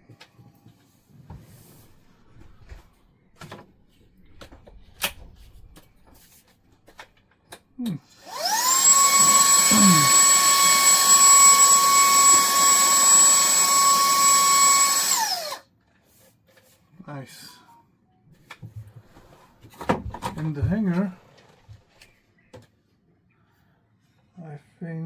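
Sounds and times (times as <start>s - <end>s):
handheld vacuum cleaner whine: 8.1s - 15.6s.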